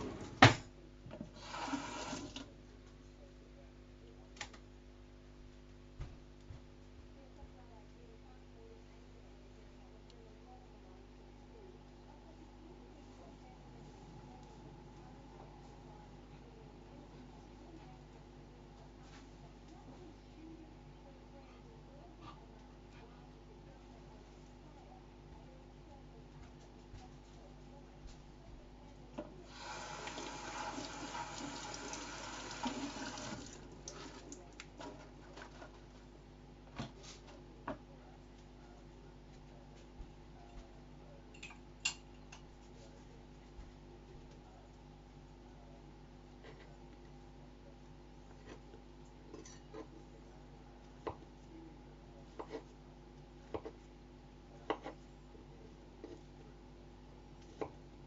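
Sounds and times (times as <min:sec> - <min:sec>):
electrical hum: 0:00.0 - 0:58.0
water running from tap: 0:01.4 - 0:02.5, 0:29.5 - 0:34.4.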